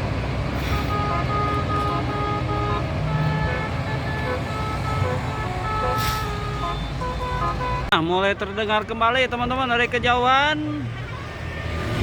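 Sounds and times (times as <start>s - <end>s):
road traffic rumble: 0.0s - 12.0s
bus horns playing melodic notes: 0.3s - 8.1s.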